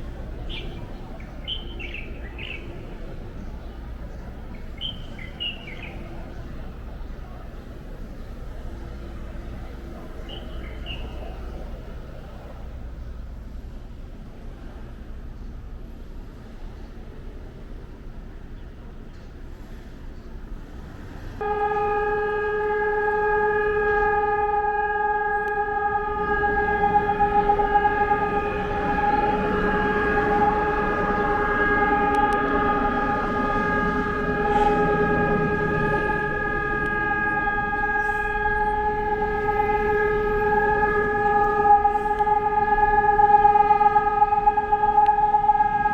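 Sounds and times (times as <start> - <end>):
low street rumble: 0.0 - 45.9
air raid siren steady tone: 21.4 - 45.9.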